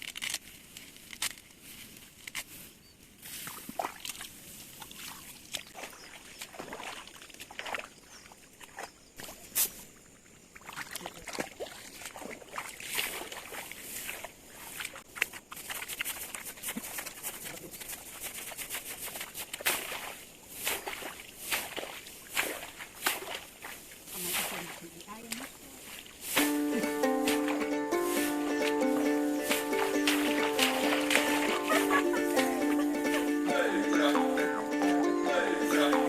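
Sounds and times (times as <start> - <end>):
stalks snapping and clicking: 0.0 - 1.5
rice stalks rustling: 0.0 - 5.4.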